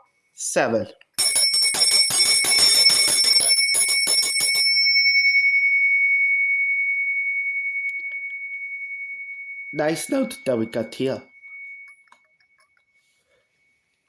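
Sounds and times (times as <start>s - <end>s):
small hand bell ringing: 1.2s - 13.2s.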